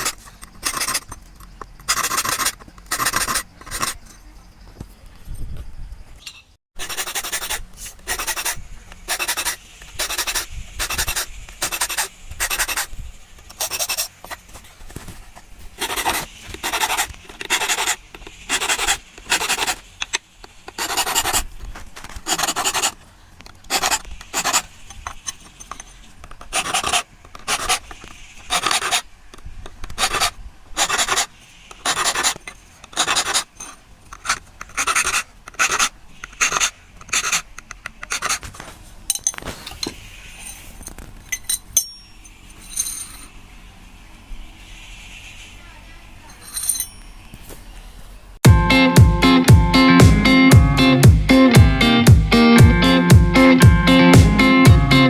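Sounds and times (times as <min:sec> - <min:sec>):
hand file rasping on steel: 0:00.0 - 0:04.2, 0:06.8 - 0:12.9, 0:22.3 - 0:23.0, 0:23.7 - 0:25.4, 0:26.4 - 0:29.0, 0:30.0 - 0:33.5.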